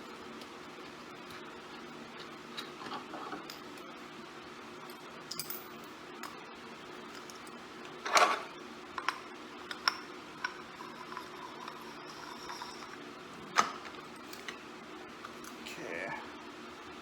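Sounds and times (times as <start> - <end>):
metal parts and tools clinking: 5.3 - 5.8.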